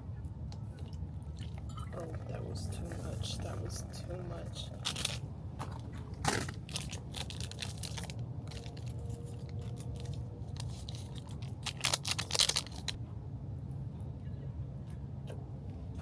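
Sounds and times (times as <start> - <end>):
dry noodles crunching and scraping: 1.4 - 13.0.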